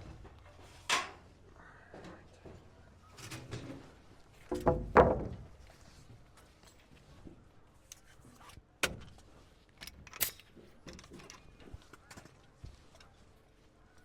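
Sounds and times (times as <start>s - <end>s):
wooden board knocking: 4.5s - 5.4s.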